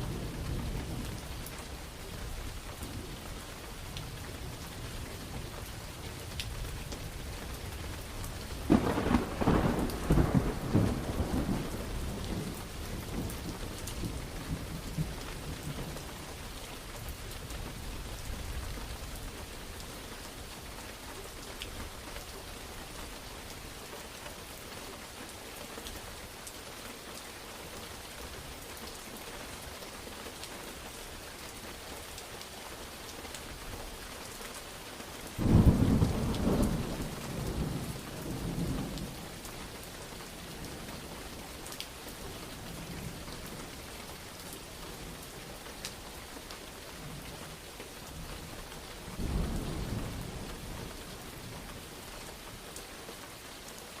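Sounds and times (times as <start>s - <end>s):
heavy rain: 0.0s - 54.0s
thunder rumbling: 8.3s - 16.2s, 35.4s - 39.4s, 49.2s - 50.8s.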